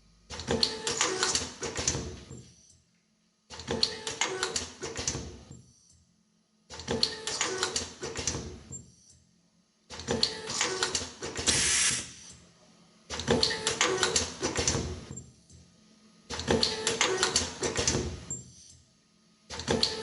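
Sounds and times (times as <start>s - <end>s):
short hiss: 11.5s - 12.1s.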